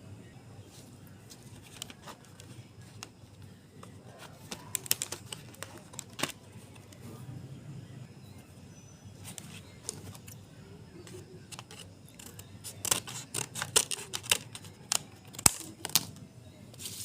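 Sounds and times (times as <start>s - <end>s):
clicks and taps of package handling: 1.3s - 7.0s, 9.3s - 10.4s, 11.0s - 16.2s.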